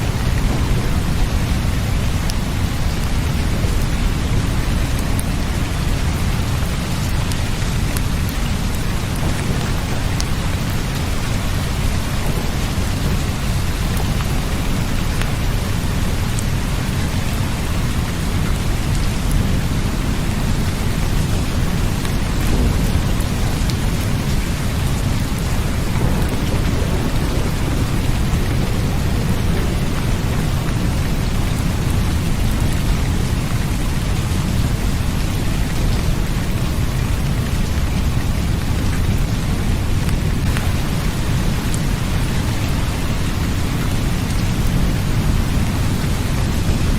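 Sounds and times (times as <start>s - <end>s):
steady rain: 0.0s - 46.9s
low rumble: 18.9s - 37.5s.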